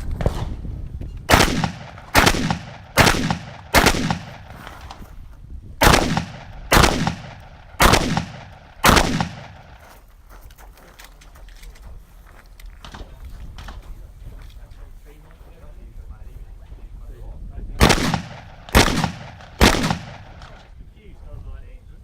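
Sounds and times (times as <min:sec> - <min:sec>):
shotgun shots with echo: 0:01.3 - 0:05.0, 0:05.8 - 0:09.8, 0:17.8 - 0:20.7.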